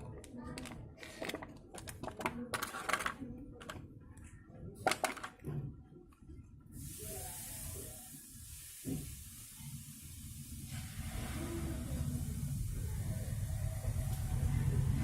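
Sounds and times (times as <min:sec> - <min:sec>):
packaging clicks and taps: 0:00.0 - 0:03.9
steady hiss: 0:06.8 - 0:13.6.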